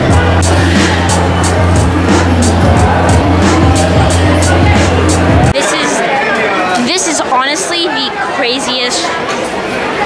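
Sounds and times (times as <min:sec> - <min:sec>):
music with heavy bass: 0:00.0 - 0:05.6.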